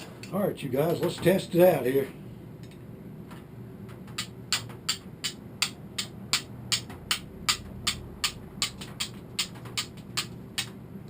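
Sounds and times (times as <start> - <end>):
steel striker clicking on flint: 4.2 - 10.7.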